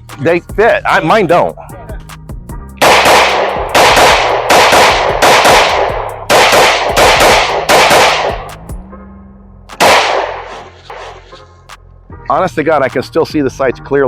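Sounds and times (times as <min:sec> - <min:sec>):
pistol shots with ringing tail: 0:02.8 - 0:08.5, 0:09.8 - 0:10.8.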